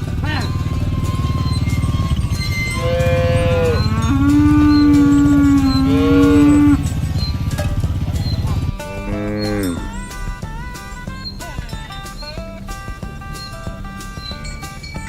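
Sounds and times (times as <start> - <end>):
cattle mooing: 0.0 - 15.0.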